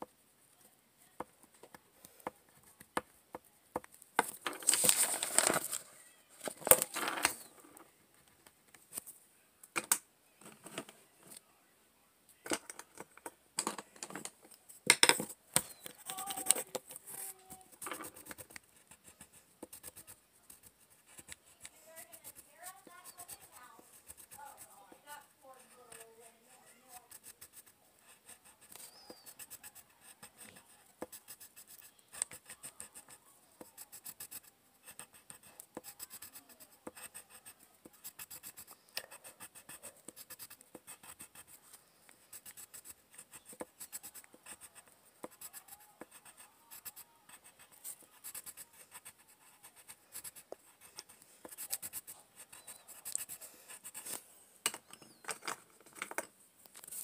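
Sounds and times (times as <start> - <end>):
pencil scratching on paper: 15.6 - 54.2.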